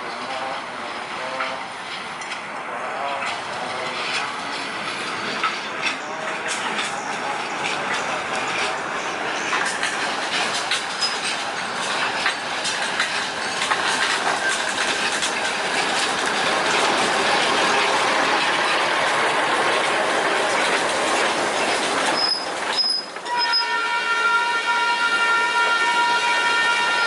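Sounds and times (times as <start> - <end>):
train wheels clattering on rails: 0.0 - 27.0
high wheel squeals: 22.1 - 23.9
locomotive horn blast: 23.2 - 27.0.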